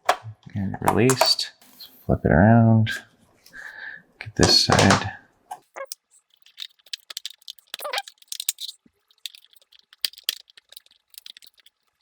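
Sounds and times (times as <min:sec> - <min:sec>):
plastic parts clicking and tapping: 0:00.0 - 0:01.4, 0:04.4 - 0:12.0.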